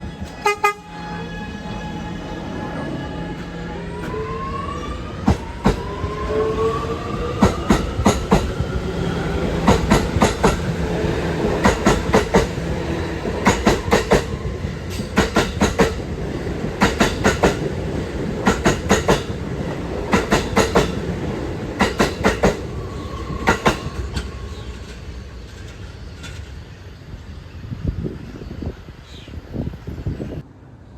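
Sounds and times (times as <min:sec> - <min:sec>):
train traction motors whining: 0:00.0 - 0:29.0.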